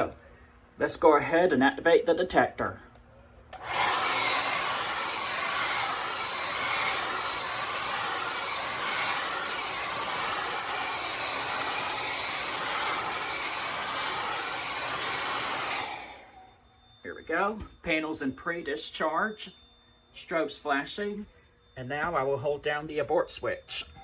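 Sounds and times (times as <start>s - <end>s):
hair dryer blowing: 3.6s - 16.5s.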